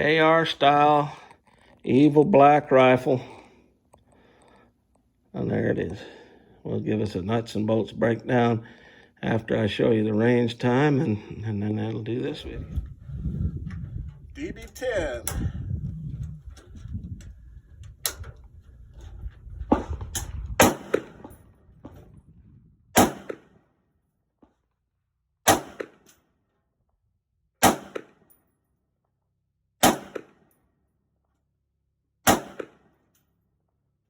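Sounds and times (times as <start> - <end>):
rifle shots: 20.6 - 21.3, 23.0 - 23.6, 25.5 - 26.1, 27.6 - 28.2, 29.8 - 30.4, 32.3 - 32.9.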